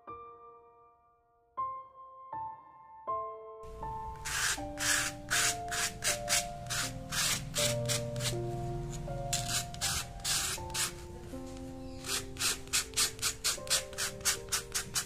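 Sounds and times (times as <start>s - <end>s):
slow keyboard music: 0.0s - 15.0s
brush rasping on canvas: 4.0s - 15.0s.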